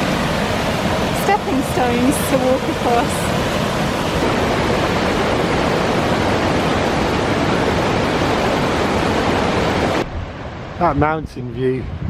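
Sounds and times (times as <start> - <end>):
river rushing over rocks: 0.0 - 10.8.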